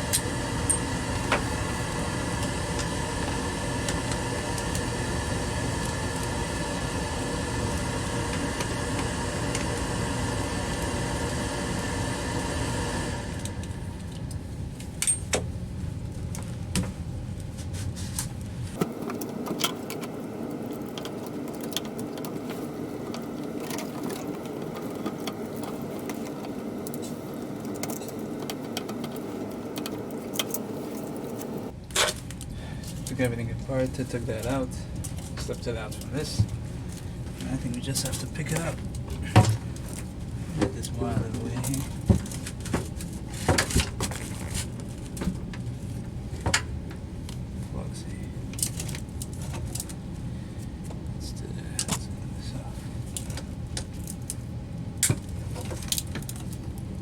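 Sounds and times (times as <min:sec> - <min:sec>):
lighter steady hum: 0:00.0 - 0:14.5
mechanical hum: 0:00.0 - 0:57.0.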